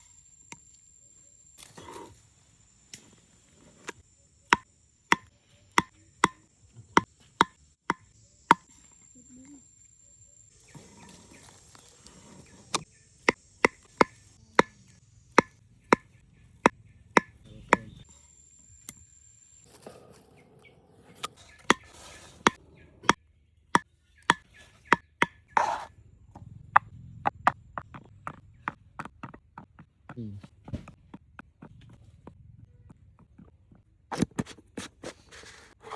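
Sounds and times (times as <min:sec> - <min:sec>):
sharp chopping strikes: 0:13.3 - 0:14.8, 0:15.4 - 0:16.1.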